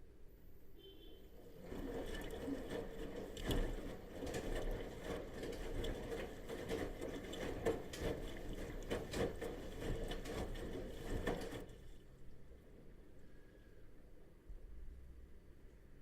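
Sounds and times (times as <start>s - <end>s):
washing machine drum turning: 1.4s - 11.7s.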